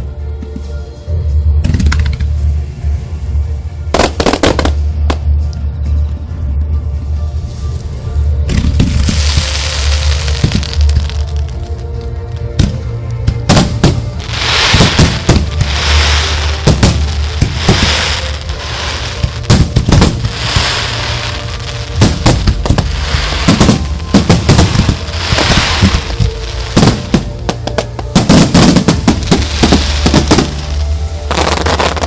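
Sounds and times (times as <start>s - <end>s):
fireworks hissing crackle: 7.3s - 12.8s, 13.5s - 32.0s
fireworks bangs: 12.6s - 32.0s.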